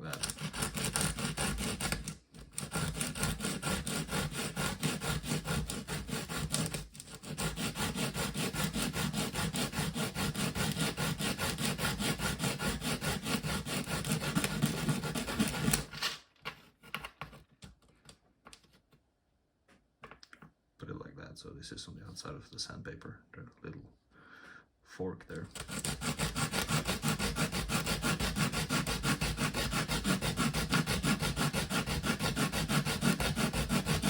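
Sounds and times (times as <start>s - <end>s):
plastic rubbing on sandpaper: 0.0s - 15.9s, 25.5s - 34.0s.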